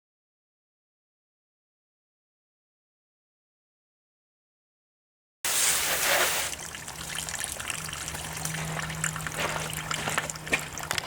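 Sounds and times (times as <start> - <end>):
water spraying with hiss: 5.5 - 7.3
water trickling: 5.5 - 11.0.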